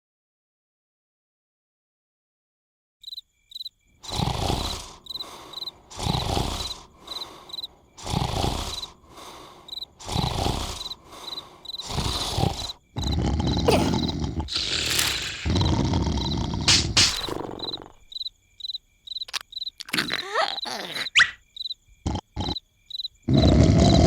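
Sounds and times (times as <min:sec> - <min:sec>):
crickets chirping: 0:03.0 - 0:24.0
cartoon character snoring: 0:04.0 - 0:18.1, 0:19.3 - 0:21.4, 0:22.0 - 0:22.6, 0:23.3 - 0:24.0.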